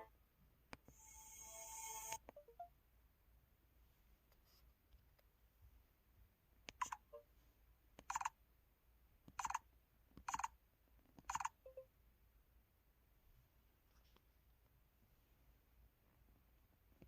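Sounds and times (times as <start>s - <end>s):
phone electronic beeps: 11.3s - 11.8s.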